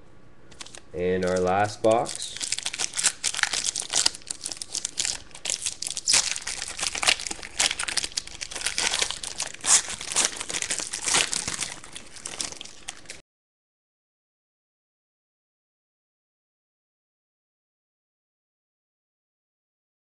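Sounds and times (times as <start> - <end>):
plastic wrapping tearing and crinkling: 0.5 - 13.2.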